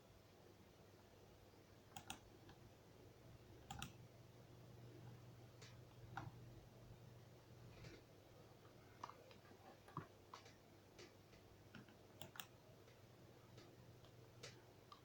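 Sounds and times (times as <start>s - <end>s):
low steady hum: 0.0s - 15.0s
computer mouse clicks: 1.9s - 2.6s, 3.6s - 4.0s, 5.6s - 6.4s, 8.6s - 15.0s.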